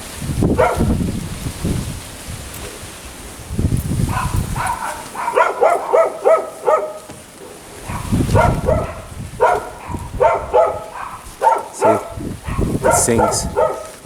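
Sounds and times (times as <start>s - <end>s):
wind rumbling on microphone: 0.0s - 14.0s
dog barking: 0.5s - 1.0s, 4.0s - 14.0s.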